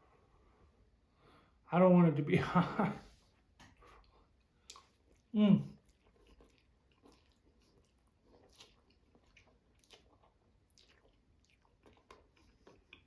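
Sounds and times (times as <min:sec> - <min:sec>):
chewing noodles: 0:03.6 - 0:13.0
wet mouth clicks and smacks: 0:03.6 - 0:13.0.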